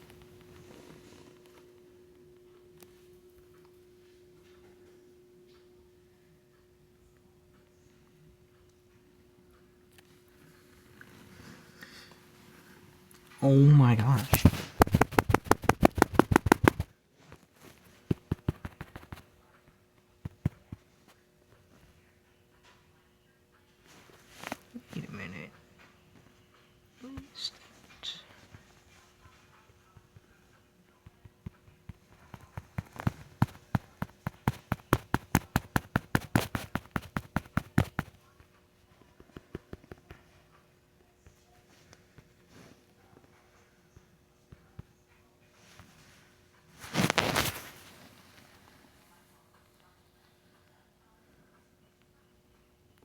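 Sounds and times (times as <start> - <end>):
faint hum: 0.0 - 53.0
sharp clicks: 14.3 - 16.8.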